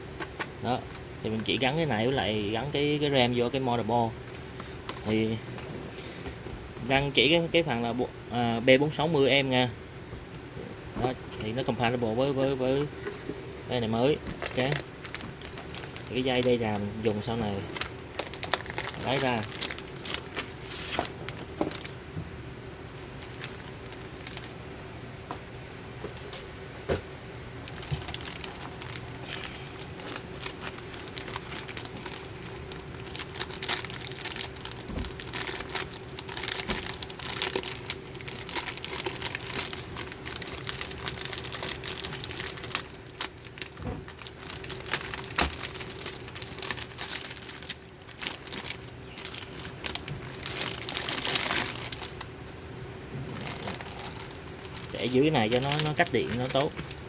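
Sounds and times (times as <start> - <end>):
faint steady hum: 0.0 - 57.0
packaging crinkling and rustling: 0.2 - 7.3, 11.0 - 22.1, 22.9 - 24.9, 27.4 - 57.0.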